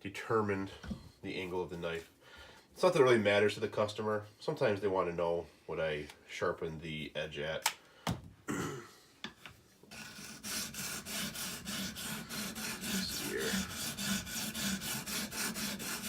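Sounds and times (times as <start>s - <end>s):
sharpening stone scraping knife: 10.1s - 16.0s.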